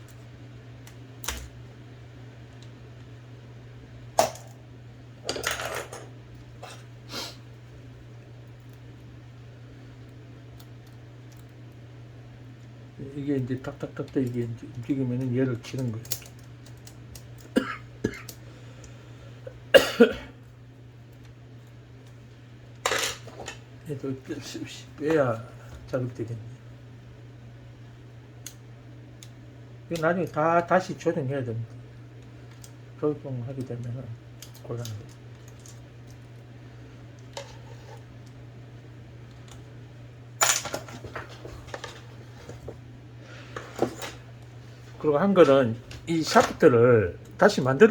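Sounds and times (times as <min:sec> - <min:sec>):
steady low hum: 0:00.0 - 0:47.9
man coughing: 0:17.6 - 0:18.3, 0:19.7 - 0:20.4.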